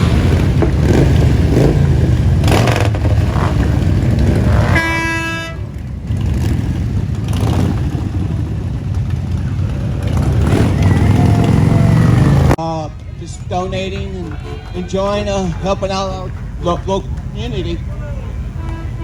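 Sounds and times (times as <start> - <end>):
vehicle engines rumbling: 0.0 - 19.0
horn honk: 2.8 - 6.5, 13.7 - 19.0.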